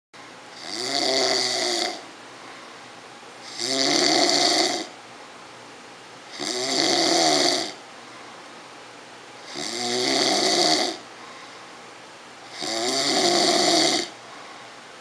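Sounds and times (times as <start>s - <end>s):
loud snoring: 0.6s - 2.0s, 3.4s - 4.9s, 6.3s - 7.8s, 9.4s - 11.0s, 12.5s - 14.2s
quiet breathing: 2.2s - 3.6s, 8.0s - 8.6s, 11.0s - 11.9s, 14.0s - 14.9s.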